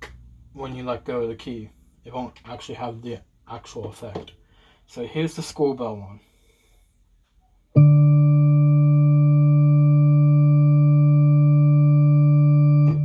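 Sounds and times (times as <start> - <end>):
long electronic keyboard note: 7.8 - 13.0.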